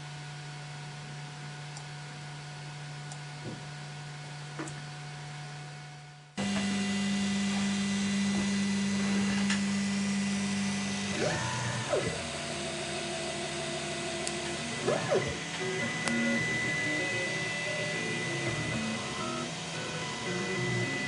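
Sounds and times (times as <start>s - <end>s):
stepper motors whining: 6.4s - 21.0s.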